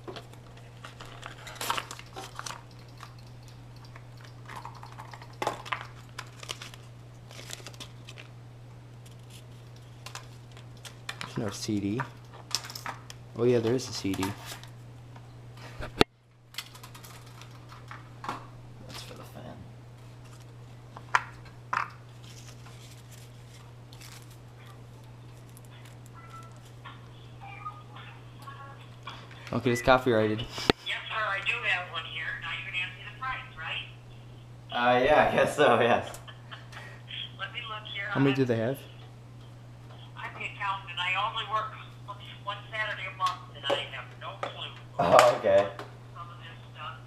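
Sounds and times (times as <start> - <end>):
steady low hum: 0.0 - 47.0
packaging rustling and crinkling: 4.7 - 8.3, 16.6 - 17.9, 22.1 - 26.8.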